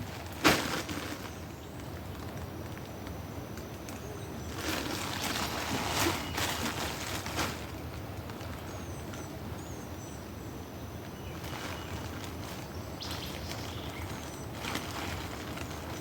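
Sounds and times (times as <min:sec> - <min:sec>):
faint bird chirps: 0:08.5 - 0:15.8.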